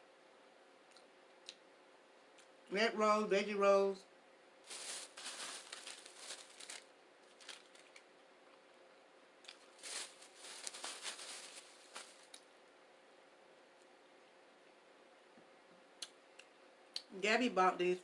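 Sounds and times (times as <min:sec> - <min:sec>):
crispy food crunching: 0:04.7 - 0:08.1.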